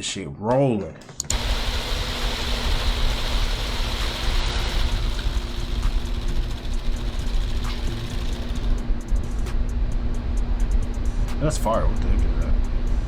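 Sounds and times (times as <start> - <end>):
engine running: 1.3 - 10.2.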